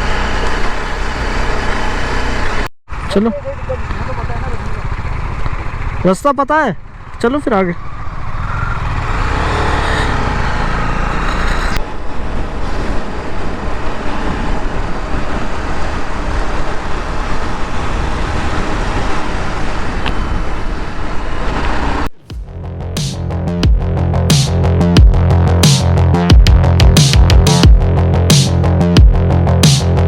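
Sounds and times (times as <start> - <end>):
motorcycle engine: 0.0 - 12.5, 21.8 - 30.0
road and traffic noise: 0.0 - 30.0
electronic music with a beat: 22.2 - 30.0.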